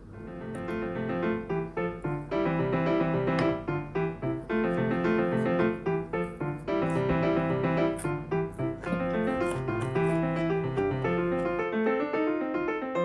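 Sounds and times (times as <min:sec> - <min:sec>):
piano music: 0:00.0 - 0:13.0.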